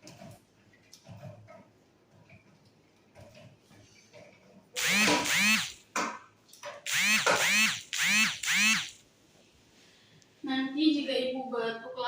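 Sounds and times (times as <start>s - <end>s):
hand crank gears whirring: 4.8s - 5.8s, 6.9s - 9.0s.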